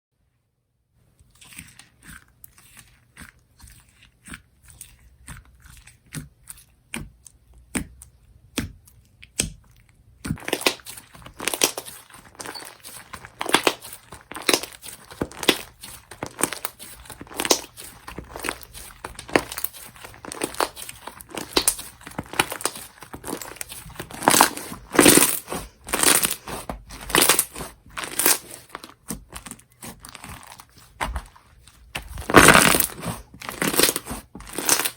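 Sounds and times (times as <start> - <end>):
slime squeezed by hand crackling: 10.3 - 34.9.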